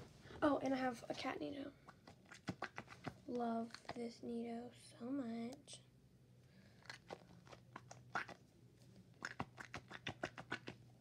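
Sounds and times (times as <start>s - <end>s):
squishy ball clicking and crackling: 6.8s - 8.4s, 9.2s - 10.8s.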